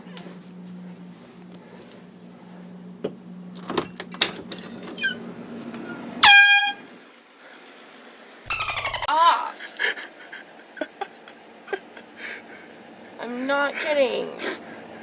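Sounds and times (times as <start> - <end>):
air horn blast: 6.2 - 6.9
low hum: 8.5 - 9.1.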